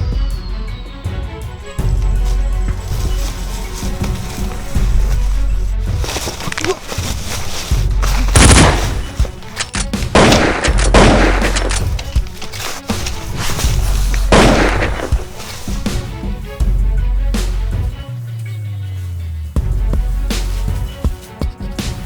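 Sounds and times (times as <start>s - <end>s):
background music with bass: 0.0s - 22.0s
gunfire sound effects: 8.4s - 9.1s, 10.1s - 11.8s, 14.3s - 15.1s.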